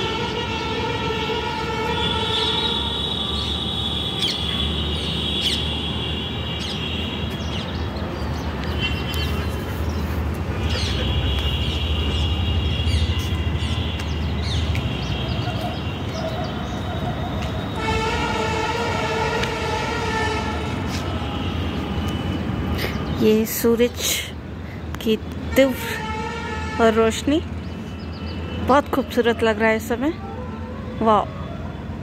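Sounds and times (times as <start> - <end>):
birds chirping: 2.1 - 18.0, 27.5 - 29.2.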